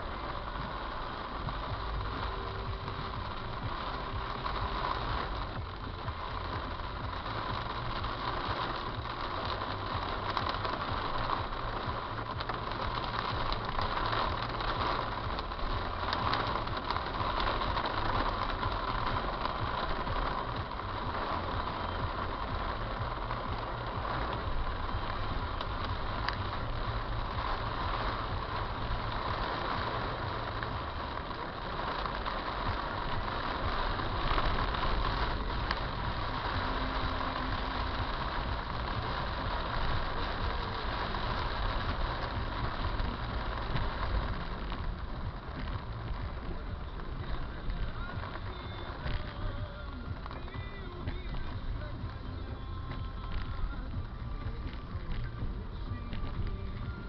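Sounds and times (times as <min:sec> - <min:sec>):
heavy rain hiss: 0:00.0 - 0:57.0
raindrops ticking: 0:00.0 - 0:57.0.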